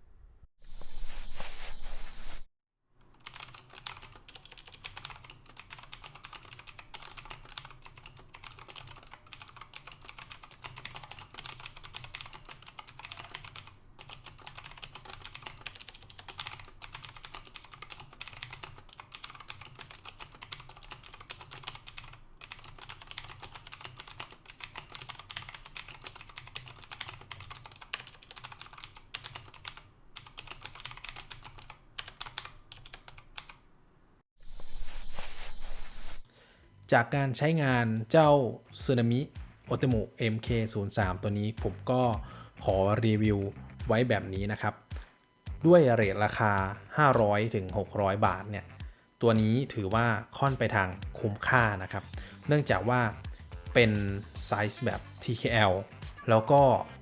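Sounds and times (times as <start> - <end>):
mechanical keyboard typing: 3.1 - 33.6.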